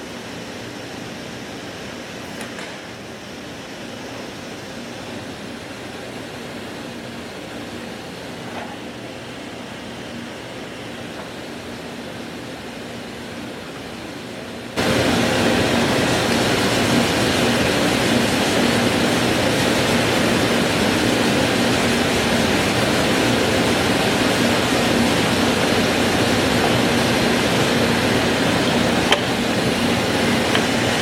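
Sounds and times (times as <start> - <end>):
rushing machine noise: 14.8 - 31.0.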